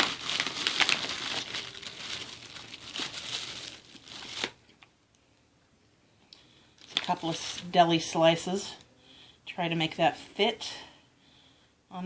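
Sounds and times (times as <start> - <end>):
plastic wrapping crinkling and tearing: 0.0 - 4.8, 6.8 - 7.7.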